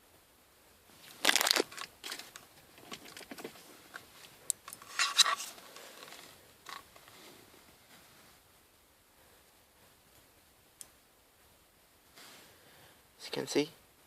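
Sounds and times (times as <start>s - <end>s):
plastic crinkling and rustling: 0.9s - 8.3s.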